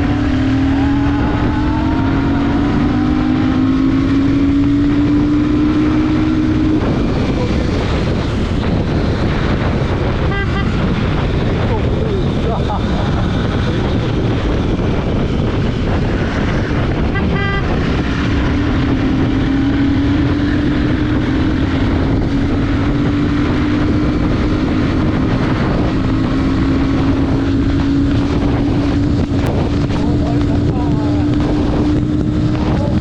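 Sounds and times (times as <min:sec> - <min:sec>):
motorcycle engine pulling hard: 0:00.0 - 0:33.0
wind buffeting microphone: 0:00.0 - 0:33.0.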